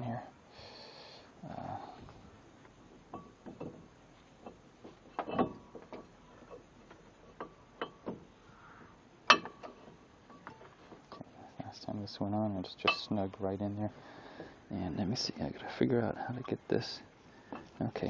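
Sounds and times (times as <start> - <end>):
brake parts and tools clicking: 2.6 - 11.3.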